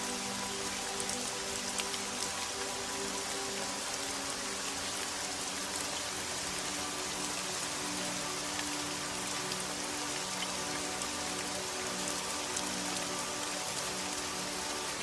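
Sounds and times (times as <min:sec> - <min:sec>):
soft sustained music: 0:00.0 - 0:15.0
steady rain: 0:00.0 - 0:15.0.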